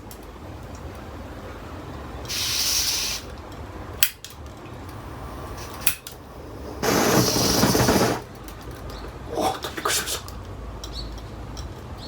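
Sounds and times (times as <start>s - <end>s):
gas hissing: 2.2s - 8.4s
piezo igniter clicks: 3.2s - 9.0s
torch flame rushing: 4.7s - 8.5s.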